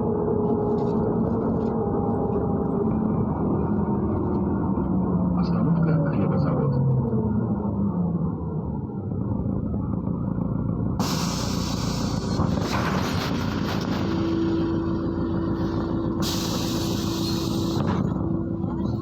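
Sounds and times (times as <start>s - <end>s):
bus engine and road rumble: 0.0s - 19.0s
loud hiss: 11.0s - 14.4s, 16.2s - 18.2s.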